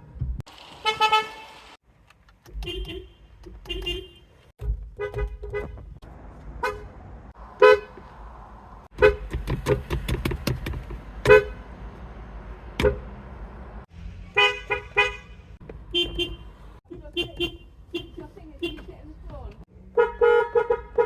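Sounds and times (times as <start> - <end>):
car horn short toots: 2.6 - 4.3, 14.4 - 16.5.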